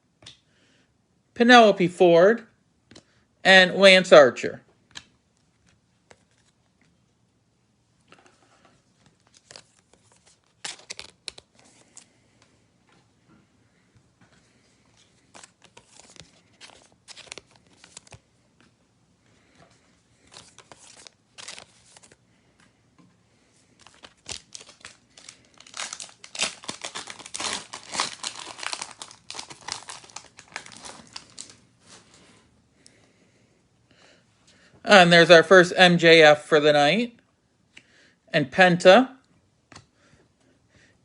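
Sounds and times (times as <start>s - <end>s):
plastic wrapper crinkling and tearing: 9.2s - 12.1s, 15.0s - 18.2s, 20.2s - 22.2s, 23.8s - 31.6s.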